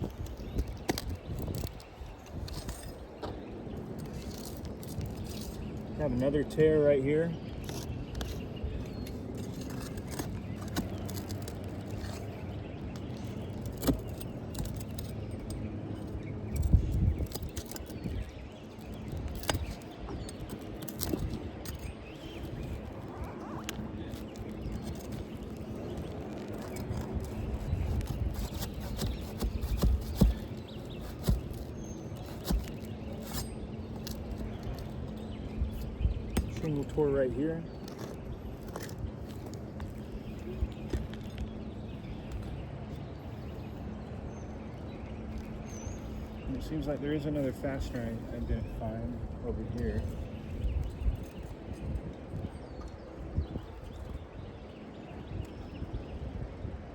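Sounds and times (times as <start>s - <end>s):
tools clicking and scraping on shingles: 0.0s - 54.2s
dull knocks of shingles: 7.5s - 15.6s, 24.1s - 35.2s.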